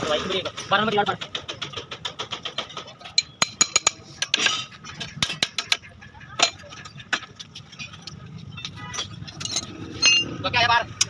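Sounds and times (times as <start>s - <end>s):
metal tools clinking: 2.4s - 10.4s.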